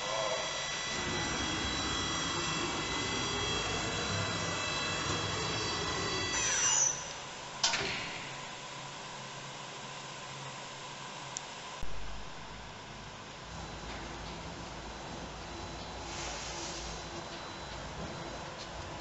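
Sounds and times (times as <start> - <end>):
spindle whine spinning down: 0.0 - 7.2
low machine hum: 0.0 - 19.0.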